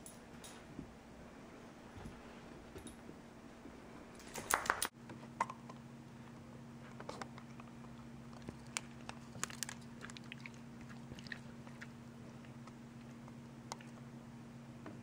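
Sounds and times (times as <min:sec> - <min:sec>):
dog chewing and crunching pencil: 0:07.0 - 0:13.2.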